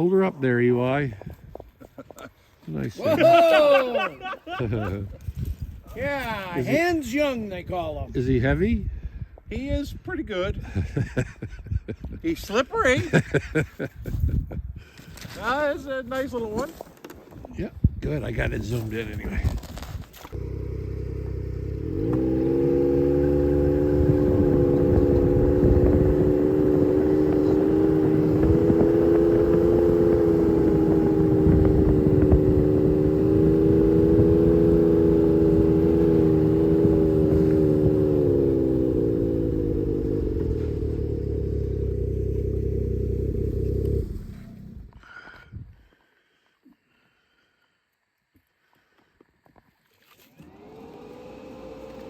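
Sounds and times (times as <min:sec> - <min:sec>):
engine revving at high speed: 0:20.4 - 0:44.9, 0:50.4 - 0:52.0.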